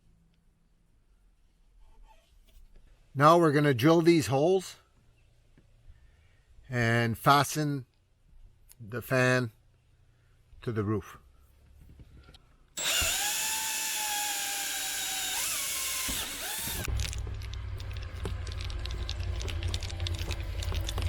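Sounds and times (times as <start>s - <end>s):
power drill drilling: 12.8s - 16.9s.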